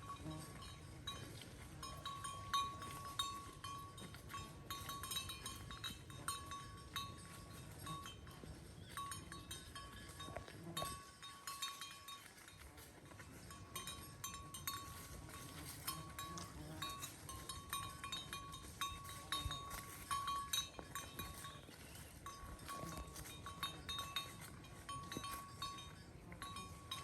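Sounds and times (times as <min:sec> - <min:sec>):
cowbells ringing and clinking: 0:00.0 - 0:27.0.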